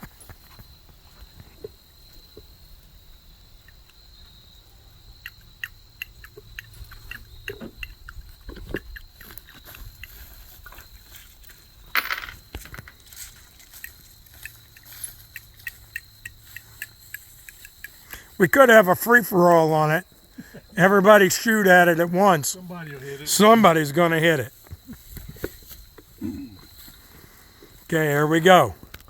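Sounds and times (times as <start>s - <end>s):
small clicks and ticks: 5.2s - 11.6s, 12.5s - 18.2s.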